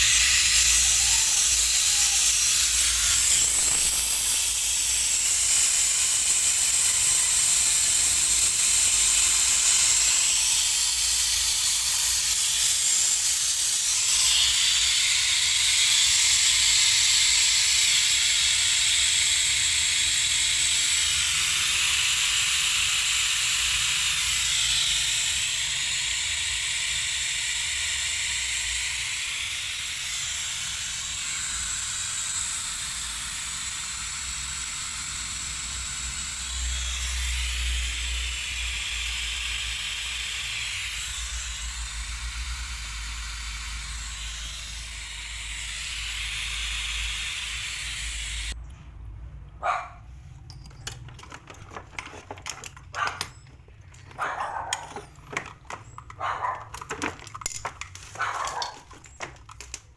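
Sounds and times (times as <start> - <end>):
pressurized gas hissing: 0.0 - 48.6
clicks and knocks: 50.4 - 59.9.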